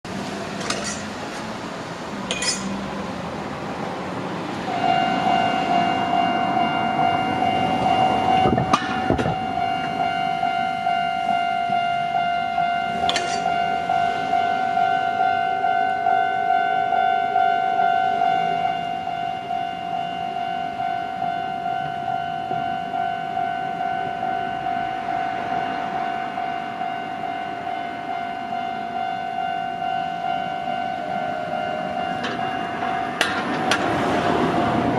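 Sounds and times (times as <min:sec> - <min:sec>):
level crossing warning bell: 0:04.5 - 0:34.9
rushing noise: 0:30.2 - 0:34.9.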